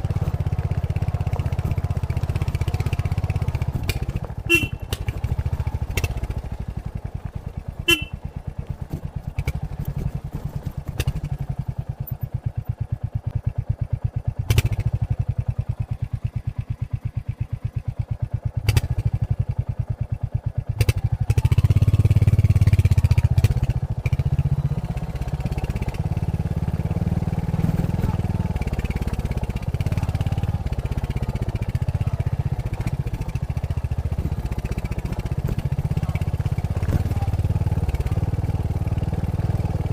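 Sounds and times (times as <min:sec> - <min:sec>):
engine knocks: 0:00.0 - 0:16.4, 0:25.2 - 0:39.9
motorcycle engine: 0:00.0 - 0:39.9.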